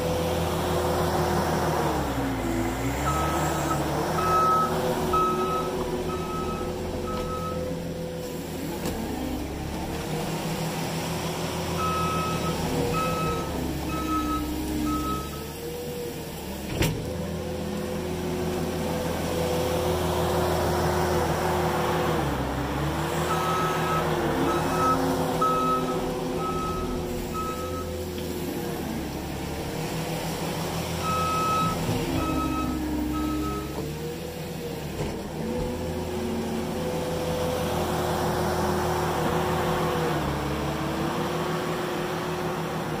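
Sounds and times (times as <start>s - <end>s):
diesel engine working: 0.0s - 43.0s
reversing alarm beeps: 3.1s - 7.7s, 11.8s - 15.5s, 23.3s - 27.9s, 31.1s - 33.8s.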